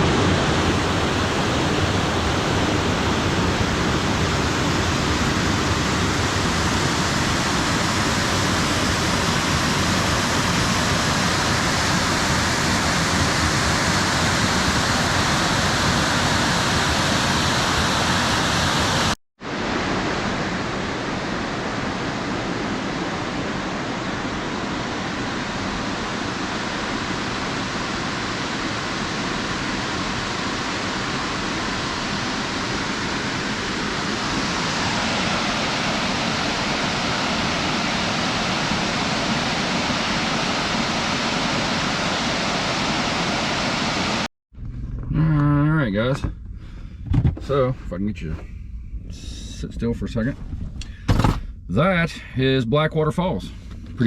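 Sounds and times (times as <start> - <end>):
waterfall rushing: 0.0 - 44.3.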